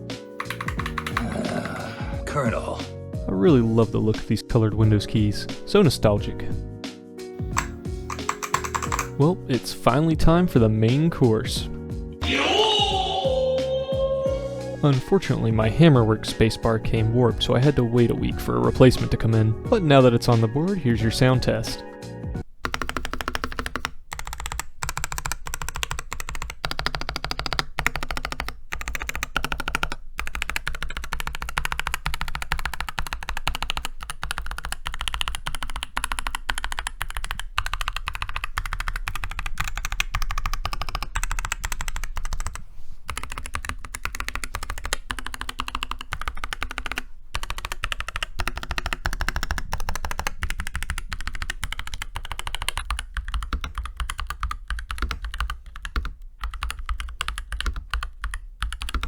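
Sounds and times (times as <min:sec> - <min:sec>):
mechanical keyboard typing: 0:00.4 - 0:01.8, 0:07.5 - 0:09.8, 0:22.6 - 0:59.0.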